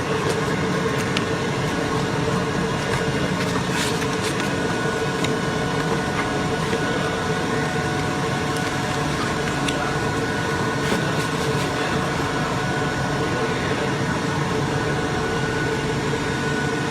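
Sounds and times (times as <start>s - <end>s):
cutting machine humming: 0.0s - 16.9s.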